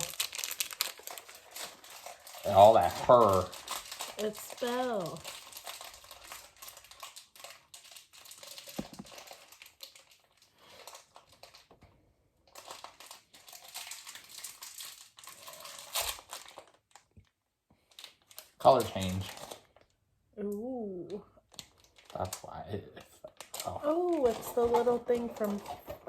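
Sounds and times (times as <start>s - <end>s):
packaging crinkling: 0.0s - 20.0s, 21.4s - 26.0s.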